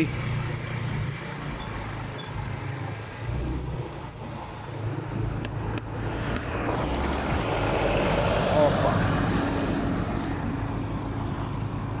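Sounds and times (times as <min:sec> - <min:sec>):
wind noise on microphone: 0:05.9 - 0:08.4.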